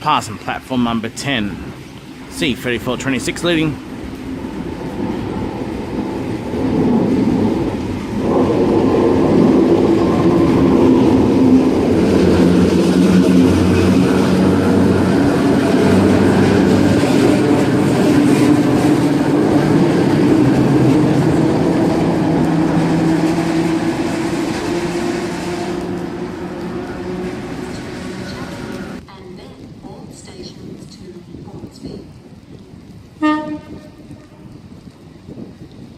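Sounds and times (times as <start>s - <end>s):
train motor hum: 1.3s - 29.4s
train wheels rolling on rails: 1.5s - 35.9s.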